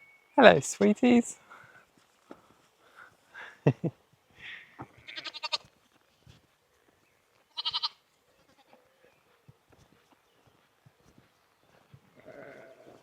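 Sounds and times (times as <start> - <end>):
sheep bleating: 5.0 - 5.7, 7.5 - 9.0, 12.2 - 13.0.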